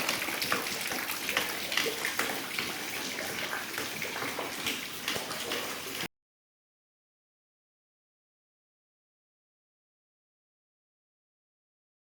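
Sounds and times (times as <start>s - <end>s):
water drips and splashes: 0.0s - 6.1s
water pouring onto flooded floor: 0.0s - 6.1s.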